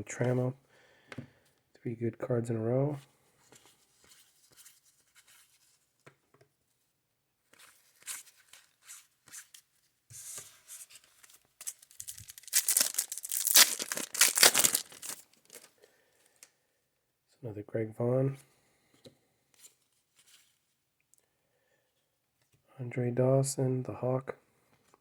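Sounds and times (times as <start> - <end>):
wrapper ripping: 11.6 - 15.7
wrapper crinkling: 11.6 - 15.8.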